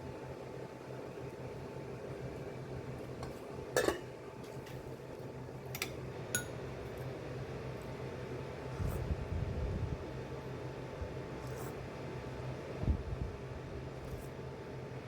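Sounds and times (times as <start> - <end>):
steady low hum: 0.0 - 15.0
utensils clinking on cookware: 3.8 - 4.8.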